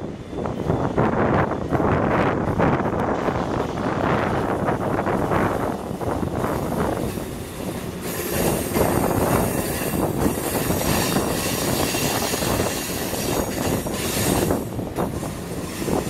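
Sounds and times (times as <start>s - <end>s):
train wheels clattering and squealing: 6.0s - 16.0s.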